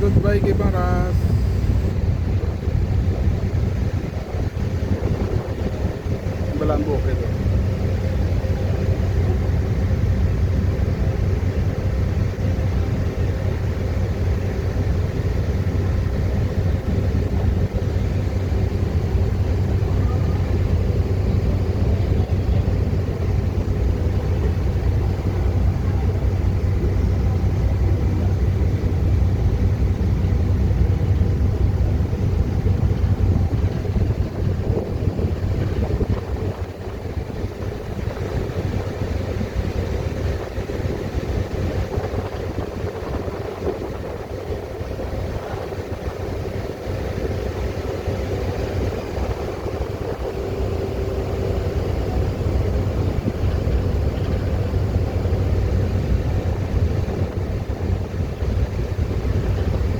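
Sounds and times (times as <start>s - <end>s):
boat engine droning: 0.0s - 59.9s
wind buffeting microphone: 0.0s - 59.9s.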